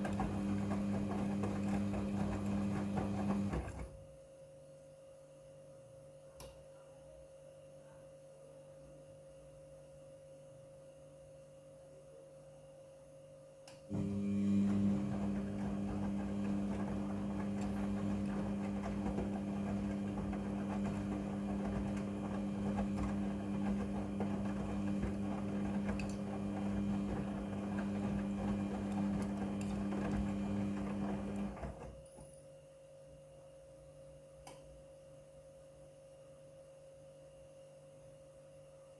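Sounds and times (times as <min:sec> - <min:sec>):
washing machine motor humming: 0:00.0 - 0:04.0, 0:13.9 - 0:32.0.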